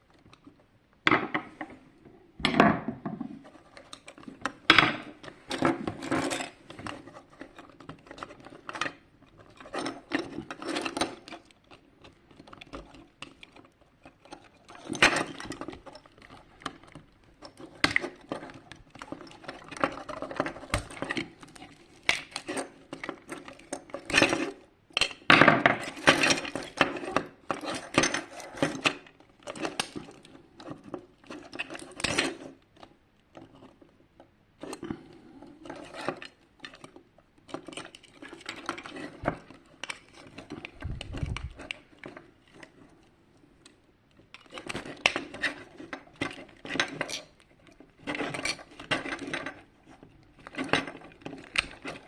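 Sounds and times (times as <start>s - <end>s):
plastic and metal parts clattering: 2.4s - 52.0s.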